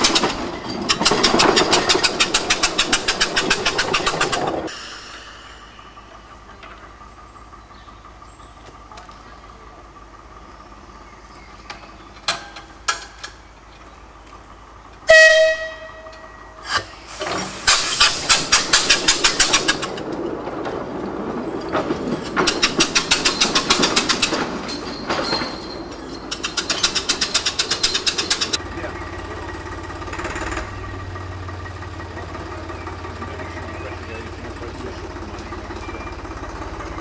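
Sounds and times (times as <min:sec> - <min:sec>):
locomotive exhaust puffing: 0:00.0 - 0:09.2, 0:14.1 - 0:37.0
locomotive whistle: 0:15.0 - 0:16.8.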